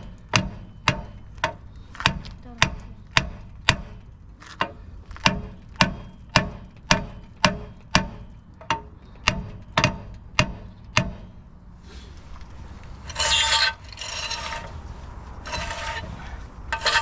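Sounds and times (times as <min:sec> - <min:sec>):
metallic tapping on brake disc: 0:00.0 - 0:11.4.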